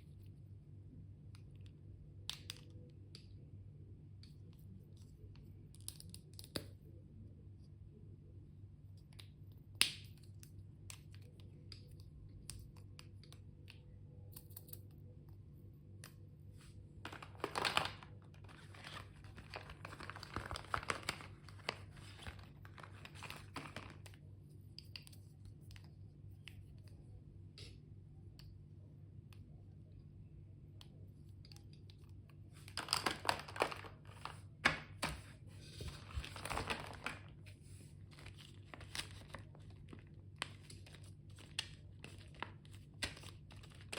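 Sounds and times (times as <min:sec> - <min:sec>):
packaging crinkling and tearing: 0:17.0 - 0:24.1, 0:32.8 - 0:34.9, 0:35.9 - 0:37.4, 0:38.0 - 0:43.9.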